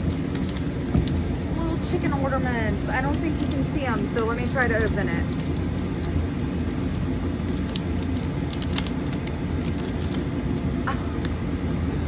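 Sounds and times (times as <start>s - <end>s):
plastic and paper crinkling: 4.7s - 10.2s.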